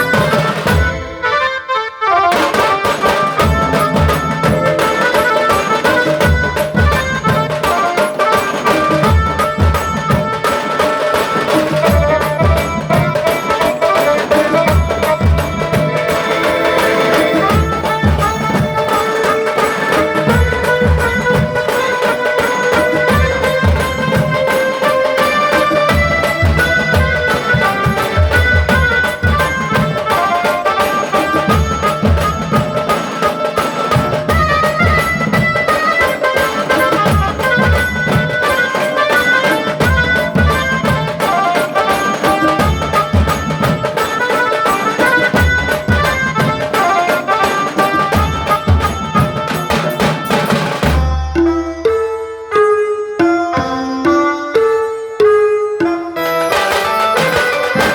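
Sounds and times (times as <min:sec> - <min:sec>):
drum band music: 0:00.0 - 0:01.5, 0:02.2 - 0:52.1, 0:55.8 - 0:57.9
held melodic line: 0:00.0 - 0:10.5, 0:11.7 - 0:52.4, 0:55.9 - 0:57.9
melody line: 0:03.3 - 0:06.6, 0:14.6 - 0:19.6, 0:56.2 - 0:57.9.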